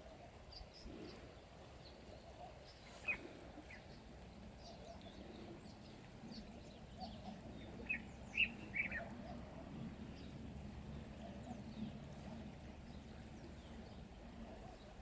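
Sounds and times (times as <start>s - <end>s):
faint outdoor background: 0.0s - 15.0s.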